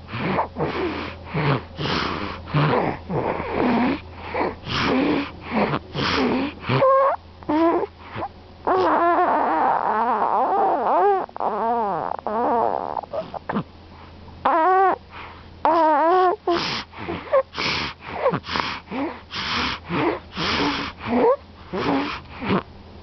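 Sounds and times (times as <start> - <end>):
whistling snoring: 0.1 - 13.4
rough noisy snores: 0.1 - 13.6, 16.2 - 22.6.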